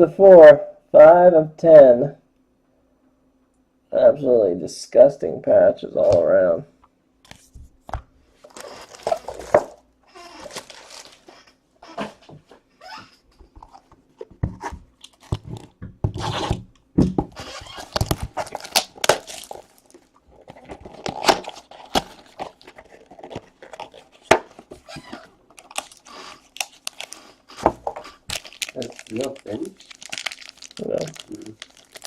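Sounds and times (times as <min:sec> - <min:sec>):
wrappers and cardboard tearing: 0:08.5 - 0:11.3, 0:14.6 - 0:16.7, 0:17.3 - 0:32.0.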